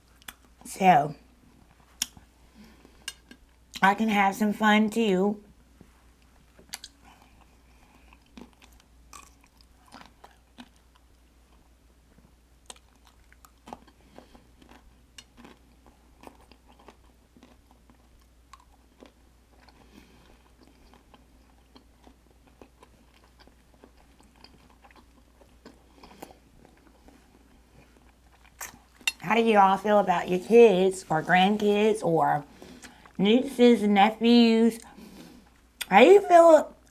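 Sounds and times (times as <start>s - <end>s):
person chewing food: 0.0s - 0.7s, 1.6s - 3.7s, 6.2s - 29.2s, 32.4s - 33.2s.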